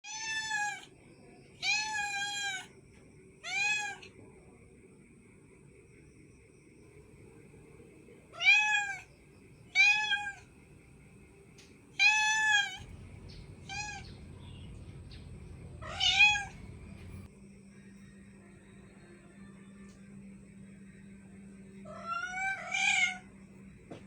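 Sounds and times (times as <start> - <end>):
cat meowing: 0.0 - 0.9, 1.6 - 2.7, 3.4 - 4.1, 8.4 - 9.1, 9.8 - 10.5, 12.0 - 14.8, 15.7 - 17.1, 21.9 - 23.3.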